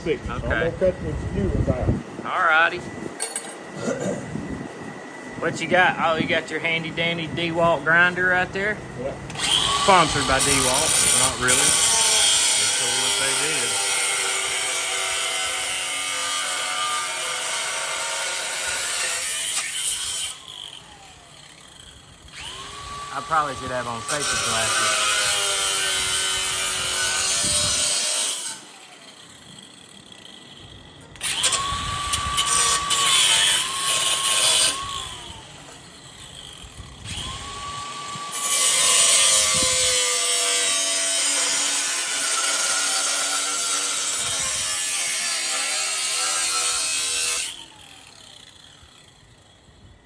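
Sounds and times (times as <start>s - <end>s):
angle grinder cutting sheet metal: 5.4s - 49.8s.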